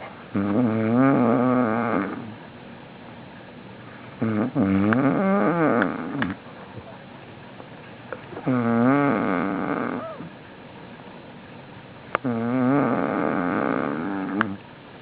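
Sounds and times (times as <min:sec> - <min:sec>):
man snoring heavily: 0:00.4 - 0:02.4, 0:04.2 - 0:06.4, 0:08.4 - 0:10.3, 0:12.2 - 0:14.6.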